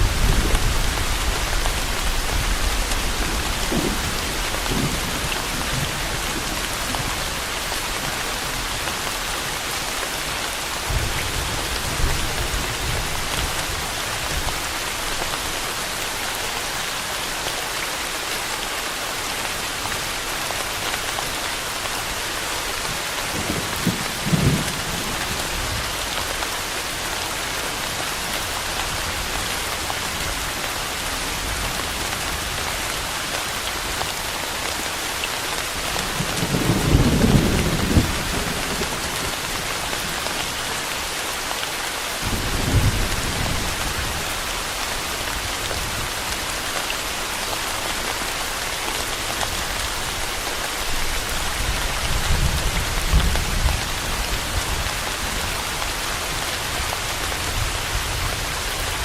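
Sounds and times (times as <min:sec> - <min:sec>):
low thunder rumbles: 0:00.0 - 0:07.4, 0:36.1 - 0:39.4
steady rain falling: 0:00.0 - 0:59.0.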